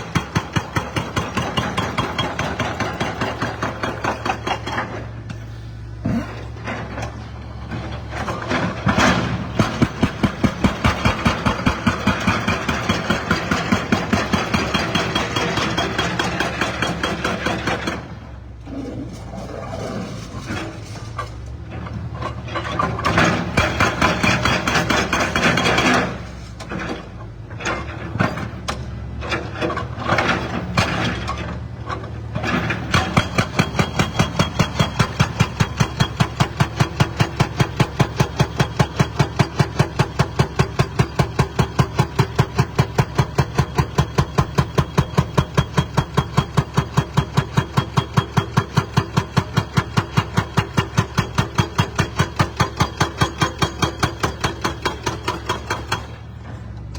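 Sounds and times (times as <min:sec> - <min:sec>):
hydraulic breaker hammering: 0:00.0 - 0:05.0, 0:08.7 - 0:18.1, 0:32.6 - 0:56.4
diesel engine of heavy machinery: 0:00.0 - 0:56.9
concrete crunching and breaking: 0:08.7 - 0:14.4.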